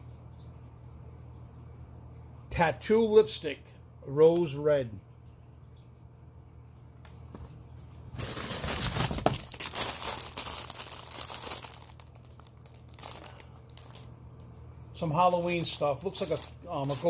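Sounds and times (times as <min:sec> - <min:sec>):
packaging crinkling: 0:08.1 - 0:17.0.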